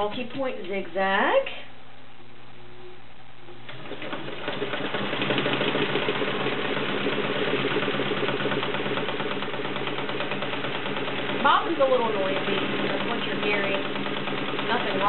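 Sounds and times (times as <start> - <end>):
noisy bobbin: 2.1 - 15.0
sewing machine stitching: 3.7 - 15.0.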